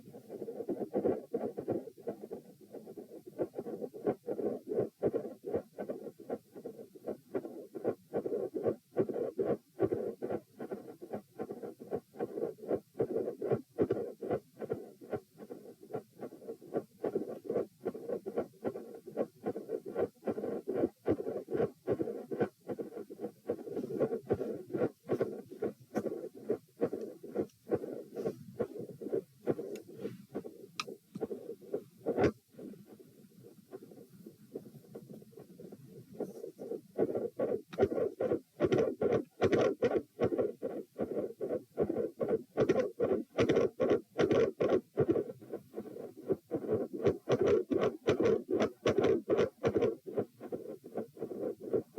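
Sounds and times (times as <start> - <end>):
heart murmur: 0.0 - 51.9
heartbeat: 0.0 - 51.9.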